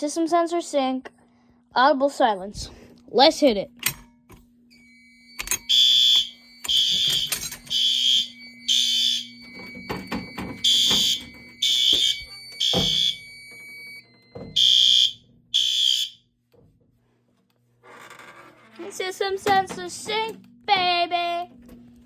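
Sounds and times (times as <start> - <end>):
low steady hum: 0.0 - 17.8
fire alarm horn blasts: 4.7 - 16.3.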